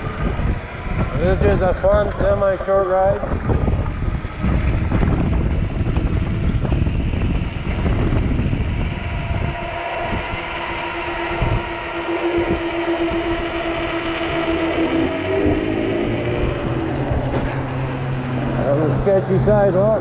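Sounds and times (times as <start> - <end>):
electric bike motor whine: 0.0 - 20.0
wind buffeting microphone: 0.0 - 20.0.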